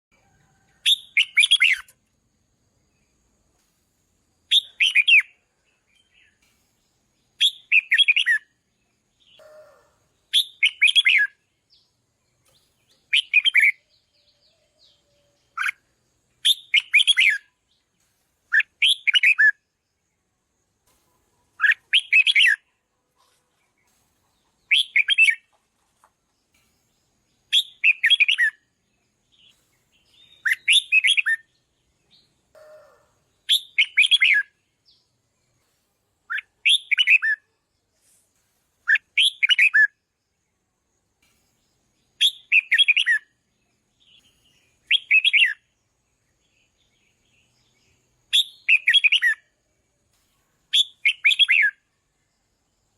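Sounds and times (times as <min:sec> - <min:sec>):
bird singing warbled phrases: 0:00.9 - 0:02.0, 0:04.5 - 0:06.4, 0:07.0 - 0:19.7, 0:21.5 - 0:22.7, 0:23.3 - 0:25.6, 0:27.4 - 0:35.2, 0:36.3 - 0:37.5, 0:38.9 - 0:39.9, 0:41.8 - 0:49.6, 0:50.7 - 0:51.9.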